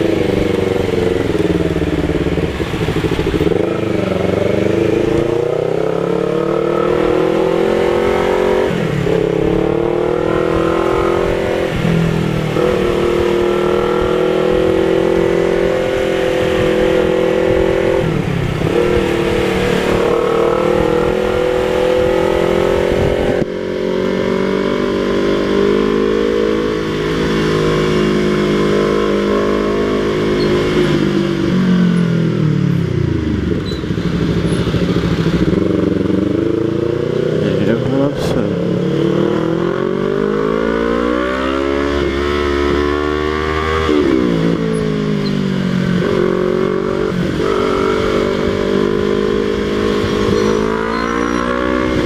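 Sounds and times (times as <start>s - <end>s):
motorcycle engine running: 0.0s - 40.7s.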